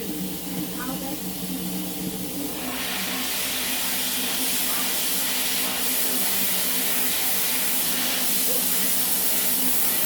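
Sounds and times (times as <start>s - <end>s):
sandblaster hissing: 2.6s - 10.0s.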